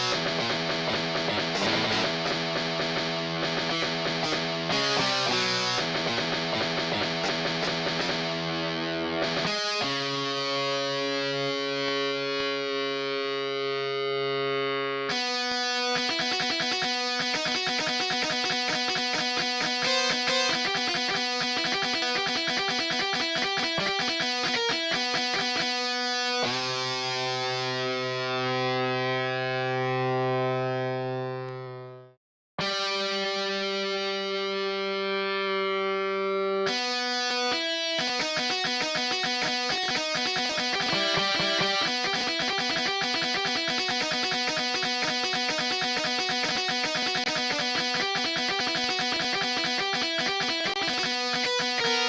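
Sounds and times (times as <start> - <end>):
palm-muted guitar riff: 0.0 - 30.8, 32.6 - 52.0
distorted electric guitar chord: 0.0 - 32.0, 32.6 - 52.0.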